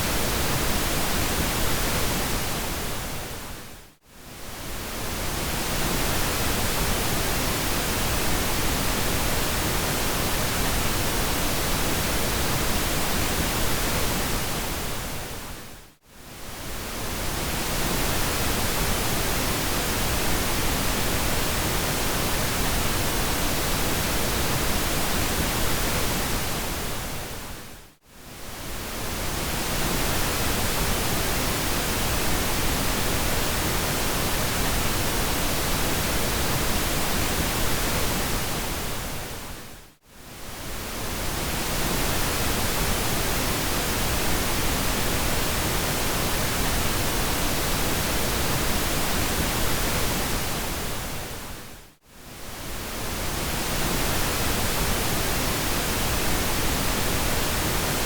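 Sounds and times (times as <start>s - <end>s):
pink noise hiss: 28.2s - 58.0s.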